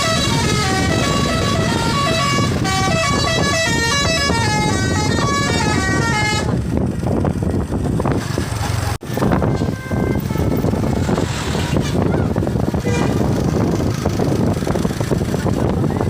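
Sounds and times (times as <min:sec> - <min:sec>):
bus horn playing a tune: 0:00.0 - 0:06.7, 0:09.2 - 0:12.2, 0:12.8 - 0:13.4
engine and traffic rumble: 0:00.0 - 0:16.0.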